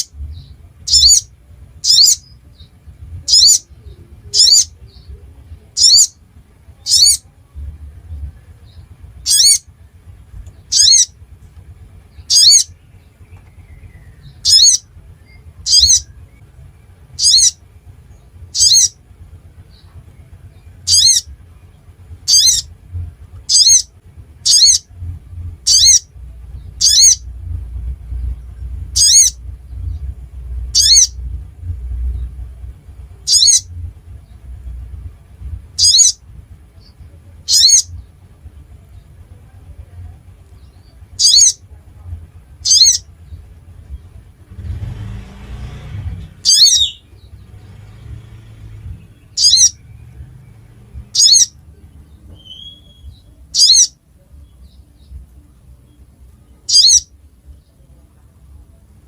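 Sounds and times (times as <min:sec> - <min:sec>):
faint low rumble: 0:00.0 - 0:59.0
bird giving sharp high calls: 0:00.8 - 0:02.4, 0:03.3 - 0:03.7, 0:04.3 - 0:04.8, 0:05.7 - 0:06.2, 0:06.9 - 0:07.2, 0:09.2 - 0:09.7, 0:10.7 - 0:11.2, 0:12.2 - 0:12.8, 0:14.4 - 0:14.9, 0:15.6 - 0:16.1, 0:17.2 - 0:17.6, 0:18.5 - 0:19.0, 0:20.8 - 0:21.3, 0:22.2 - 0:22.7, 0:23.5 - 0:24.9, 0:25.6 - 0:26.1, 0:26.8 - 0:27.2, 0:28.9 - 0:29.4, 0:30.7 - 0:31.2, 0:33.2 - 0:33.7, 0:35.8 - 0:36.2, 0:37.4 - 0:38.0, 0:41.2 - 0:41.6, 0:42.6 - 0:43.1, 0:46.4 - 0:47.2, 0:49.3 - 0:49.9, 0:51.0 - 0:51.6, 0:52.4 - 0:54.0, 0:56.6 - 0:57.1.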